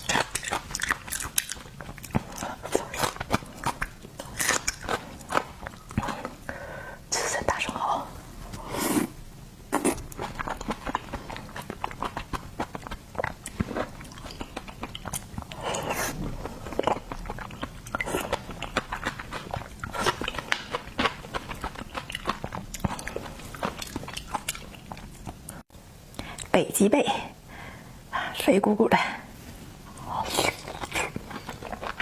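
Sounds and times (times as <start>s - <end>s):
chewing shellfish: 0.0s - 6.5s, 9.7s - 25.6s, 29.9s - 32.0s.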